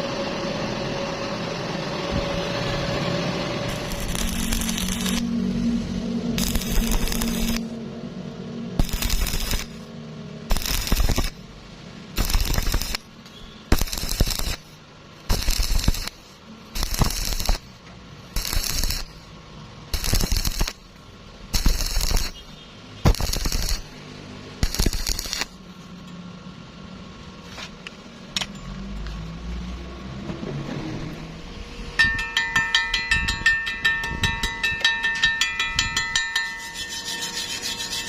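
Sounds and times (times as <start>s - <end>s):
welding arc crackling: 3.7s - 7.7s, 8.8s - 9.9s, 10.5s - 11.4s, 12.2s - 13.1s, 13.7s - 19.3s, 19.9s - 20.9s, 21.5s - 24.0s, 24.6s - 25.6s.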